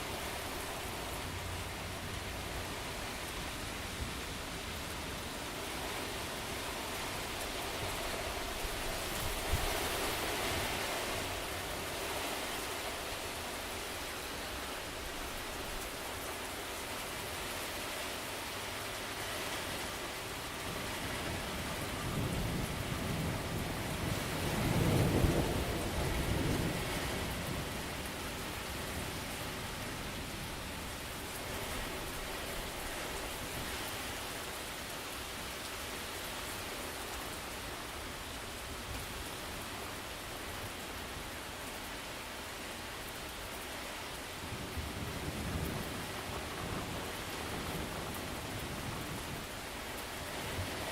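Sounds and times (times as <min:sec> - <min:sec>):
heavy rain falling: 0:00.0 - 0:50.9
thunder rumbling: 0:21.9 - 0:28.0.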